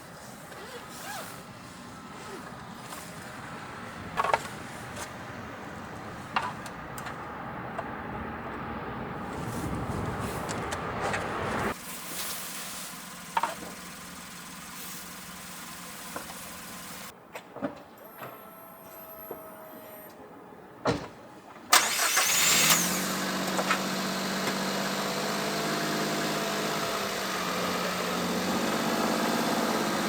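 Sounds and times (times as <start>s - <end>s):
vehicle running: 0.4s - 17.1s.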